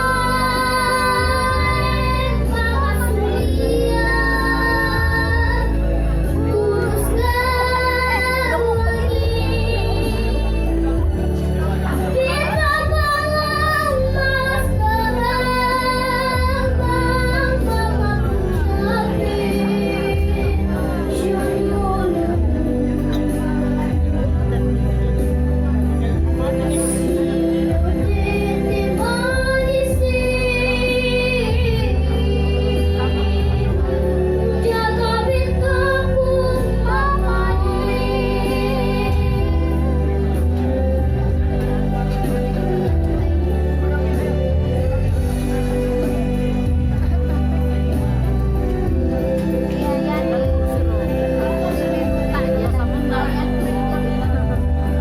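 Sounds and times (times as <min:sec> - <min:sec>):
musical accompaniment: 0:00.0 - 0:55.0.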